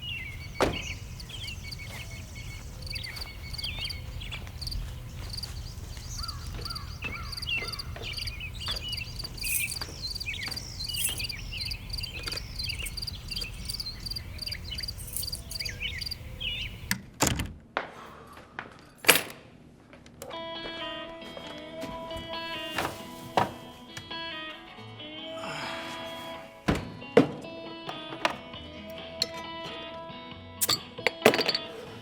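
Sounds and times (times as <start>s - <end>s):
bird chirps: 0.0s - 16.9s
crickets chirping: 0.0s - 16.9s
thuds: 0.6s - 1.1s.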